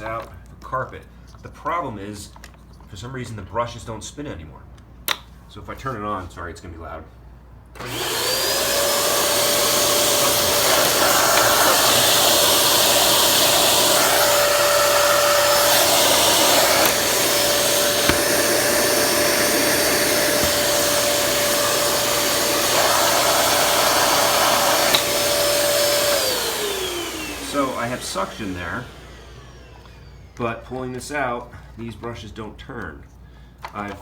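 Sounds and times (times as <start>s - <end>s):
vacuum cleaner whine and air rush: 7.8s - 31.0s.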